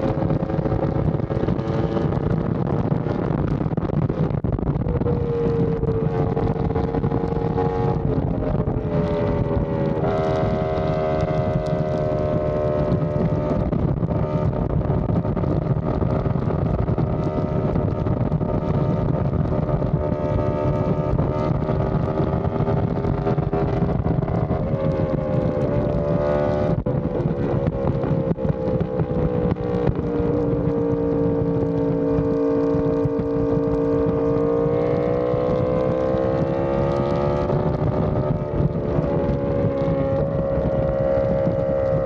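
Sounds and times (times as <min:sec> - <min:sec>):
motorcycle engine cruising: 0:00.0 - 0:42.0
wind rush on microphone: 0:00.0 - 0:42.0.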